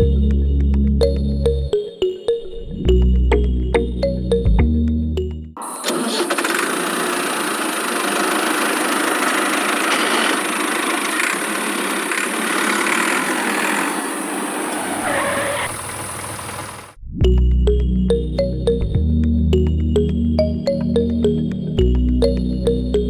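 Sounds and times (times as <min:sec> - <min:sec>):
engine running steadily: 0:05.6 - 0:17.0.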